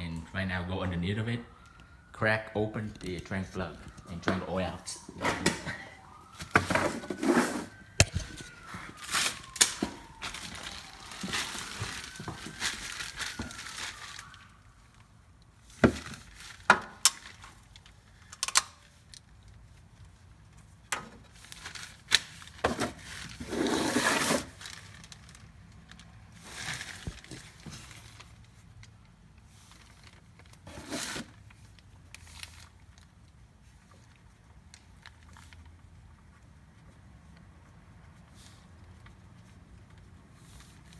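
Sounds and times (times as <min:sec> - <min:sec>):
hand tools clanking and scraping: 0:03.0 - 0:13.8.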